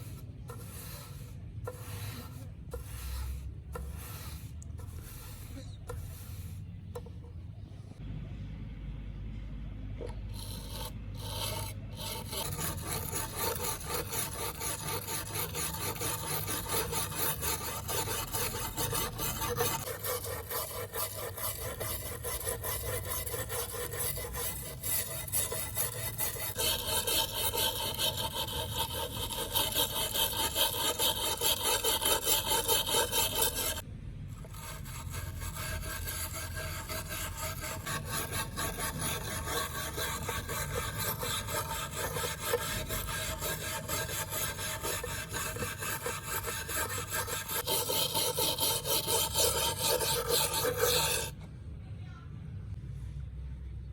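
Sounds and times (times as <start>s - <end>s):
abrasive scrubbing knife blade: 10.1s - 33.8s, 34.4s - 51.3s.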